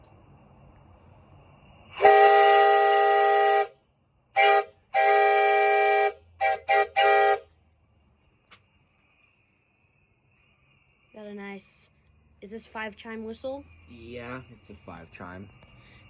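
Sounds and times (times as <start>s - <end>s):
train whistle blasts: 1.9s - 7.5s.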